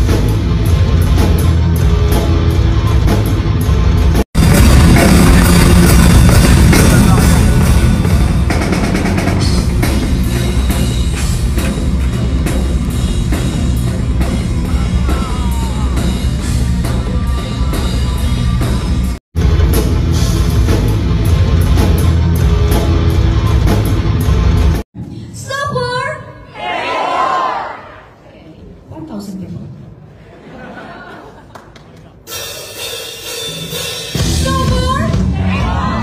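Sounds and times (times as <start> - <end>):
heavy metal band playing: 0.0 - 24.8, 32.7 - 36.0.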